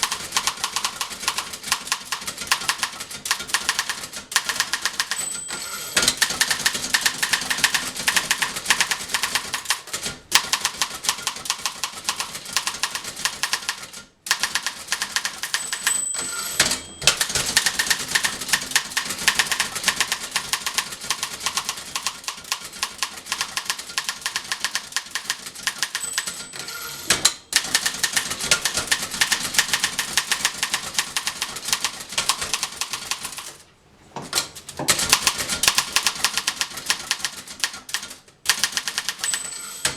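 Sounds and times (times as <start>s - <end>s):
manual typewriter keystrokes: 0.0s - 33.6s, 34.3s - 39.9s.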